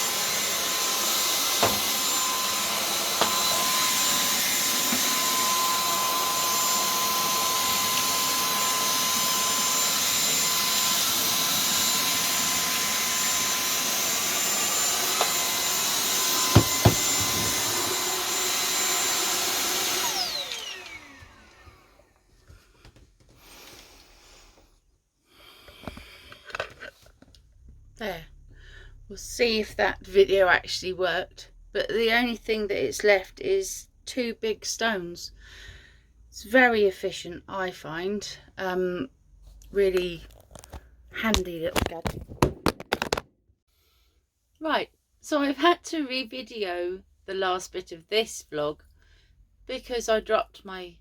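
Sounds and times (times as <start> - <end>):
vacuum cleaner whining: 0.0 - 24.6.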